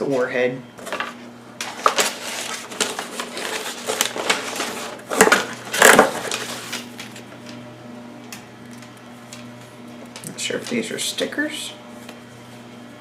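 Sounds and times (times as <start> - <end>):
packaging crinkling and rustling: 0.8 - 7.6.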